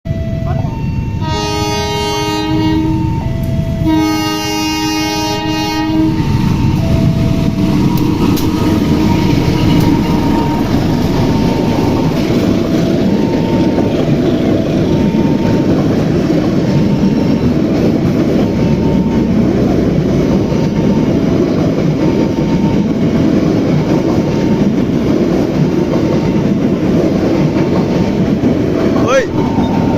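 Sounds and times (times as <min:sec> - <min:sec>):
faint two-note alternating tone: 0:00.1 - 0:20.0
train rumbling past on rails: 0:00.1 - 0:29.9
locomotive horn blasts: 0:00.5 - 0:07.1, 0:07.8 - 0:11.6.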